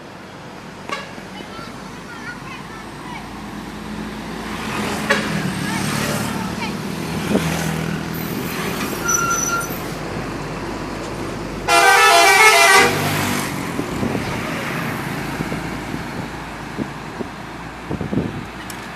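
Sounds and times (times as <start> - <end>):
road traffic and engine noise: 0.0 - 18.9
multi-tone musical bus horn: 5.0 - 5.5, 11.7 - 13.2.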